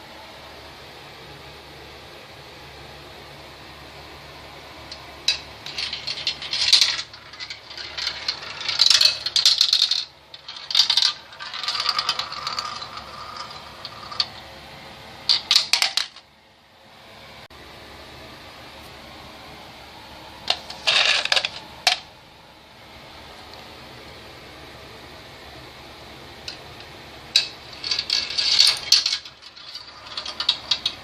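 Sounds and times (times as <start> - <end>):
marbles clattering down a run: 5.3 - 14.4.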